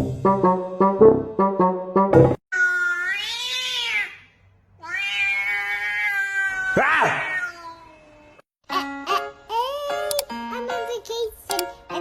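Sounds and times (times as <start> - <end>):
music: 0.0 - 2.4, 8.6 - 12.0
cat meowing: 2.6 - 8.4.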